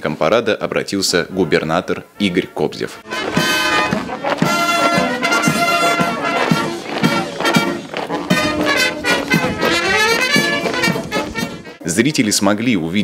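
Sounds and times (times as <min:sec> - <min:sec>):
trumpets and trombones: 0:00.9 - 0:12.0
brass band playing a march: 0:01.3 - 0:11.8
steady drum beat: 0:03.0 - 0:11.8.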